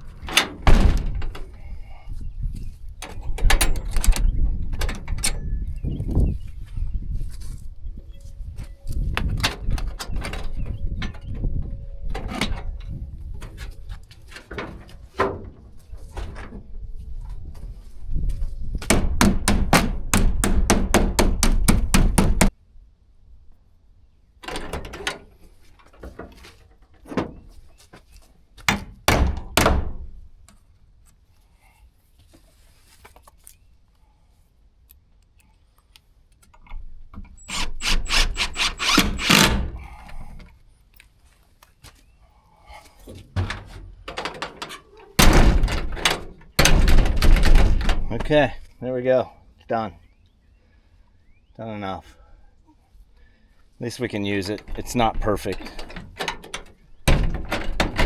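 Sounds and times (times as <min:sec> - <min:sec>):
wooden thunks: 0:00.2 - 0:01.6, 0:18.8 - 0:22.5, 0:28.6 - 0:30.2, 0:43.0 - 0:48.4, 0:54.6 - 0:58.0
knocking on wooden door: 0:18.9 - 0:22.5.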